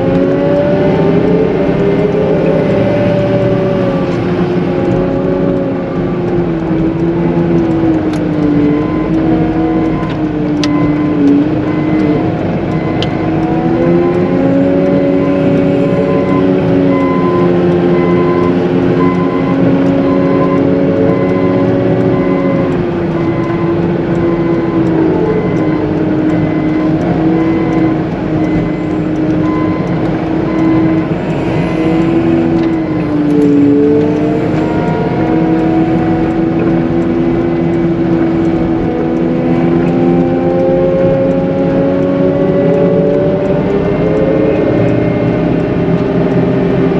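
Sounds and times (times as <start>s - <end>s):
diesel engine running: 0.0s - 46.9s
faint repeating beep: 8.6s - 36.8s.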